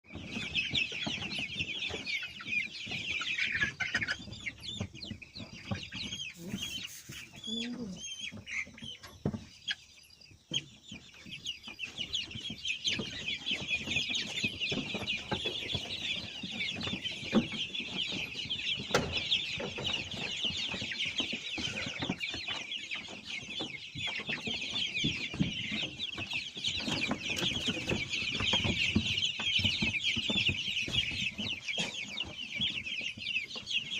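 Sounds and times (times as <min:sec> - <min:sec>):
chickens peeping and clucking: 0:00.1 - 0:33.9.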